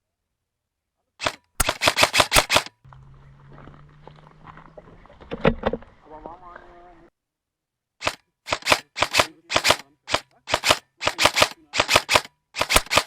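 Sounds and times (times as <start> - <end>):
airsoft gun shots: 1.2 - 2.7, 8.0 - 13.0.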